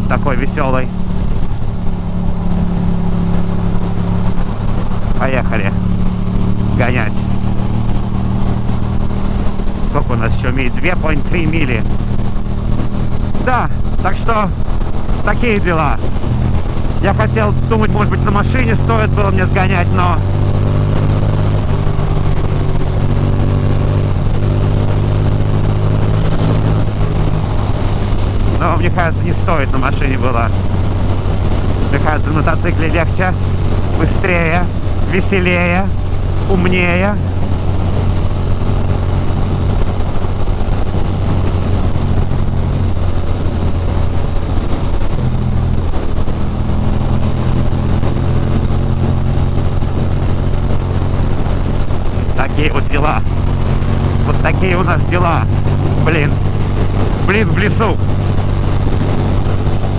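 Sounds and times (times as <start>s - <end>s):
motorcycle engine running: 0.0s - 59.9s
wind and road noise: 0.0s - 59.9s.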